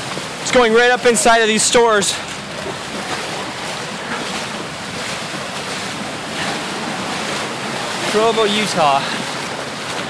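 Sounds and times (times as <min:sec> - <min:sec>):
floodwater rushing: 0:00.0 - 0:10.0
pouring rain: 0:00.0 - 0:10.0.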